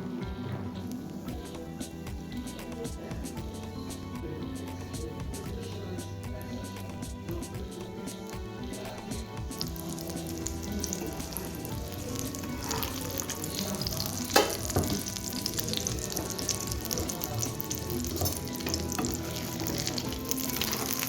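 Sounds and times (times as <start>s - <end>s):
omelette sizzling in a pan: 9.5s - 21.0s.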